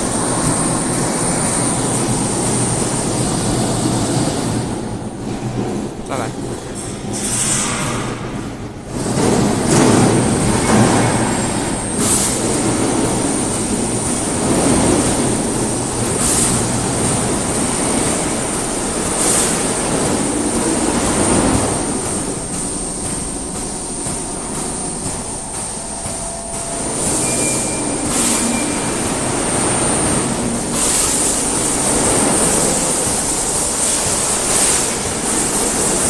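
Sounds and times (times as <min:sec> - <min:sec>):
high whine: 0:21.0 - 0:36.0.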